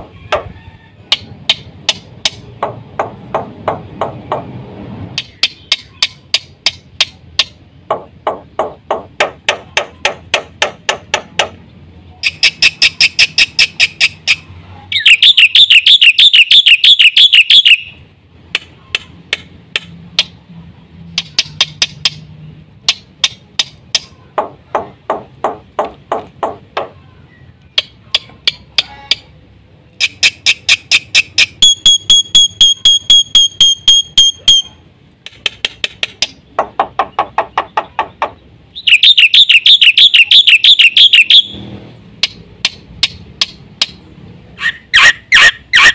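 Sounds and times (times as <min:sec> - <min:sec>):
bird singing harsh repeated notes: 0:05.2 - 0:11.5, 0:12.1 - 0:22.3, 0:22.9 - 0:45.9
buzzy bird trill: 0:12.2 - 0:18.0, 0:37.1 - 0:41.7
high whistled bird notes: 0:12.2 - 0:18.0, 0:30.0 - 0:34.8, 0:38.7 - 0:41.7.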